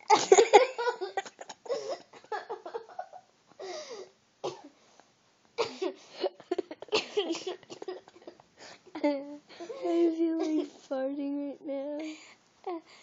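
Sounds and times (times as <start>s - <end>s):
person coughing: 4.4s - 4.7s, 5.6s - 8.4s.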